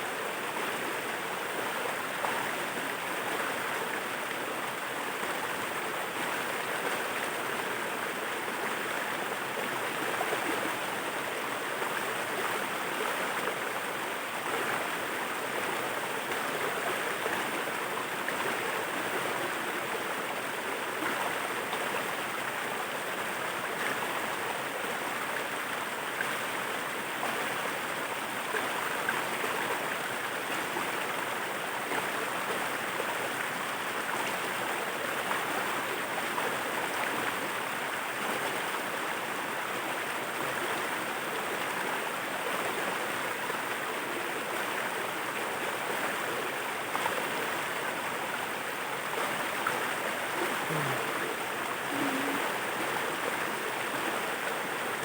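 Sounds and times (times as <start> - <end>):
waterfall rushing: 50.4 - 53.3.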